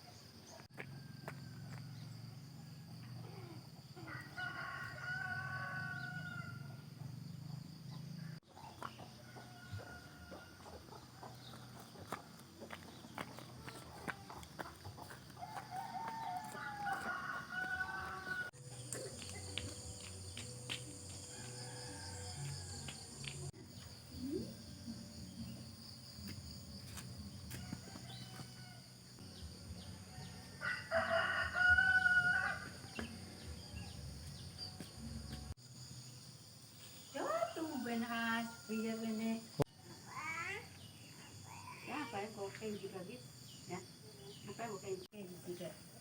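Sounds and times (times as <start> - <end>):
high-pitched insect chorus: 0.0 - 46.0
rooster crowing: 4.0 - 6.8, 9.1 - 11.6, 14.7 - 18.6, 21.2 - 23.2, 27.5 - 29.0, 30.0 - 33.1.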